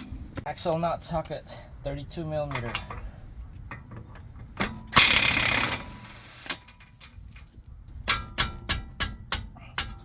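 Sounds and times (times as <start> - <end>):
sharp metallic ratchet clicks: 4.9 - 6.0.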